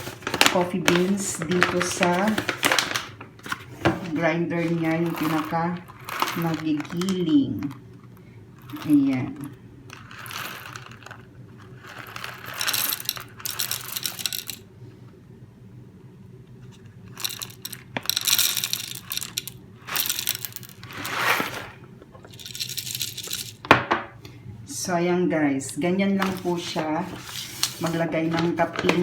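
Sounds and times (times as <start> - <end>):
coffee beans rattling into metal grinder: 0.0 - 3.6, 4.6 - 7.8, 8.6 - 14.6, 17.1 - 23.8, 26.2 - 29.0.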